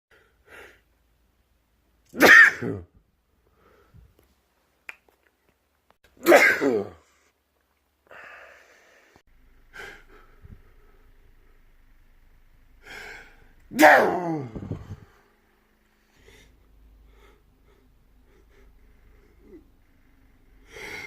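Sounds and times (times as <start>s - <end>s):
person sneezing: 2.2s - 2.9s, 6.2s - 7.1s, 13.7s - 15.1s
soft breath: 3.4s - 4.2s, 8.0s - 11.7s, 12.7s - 13.6s, 14.5s - 21.0s.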